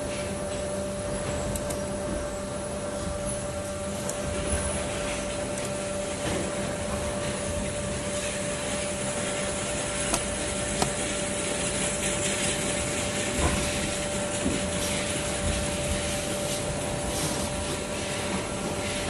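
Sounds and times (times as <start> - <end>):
machine hum with whine: 0.0 - 19.0.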